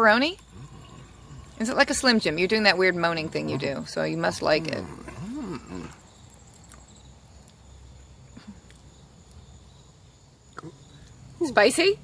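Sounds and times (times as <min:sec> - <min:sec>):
mouth clicks while chewing: 0:06.2 - 0:07.6.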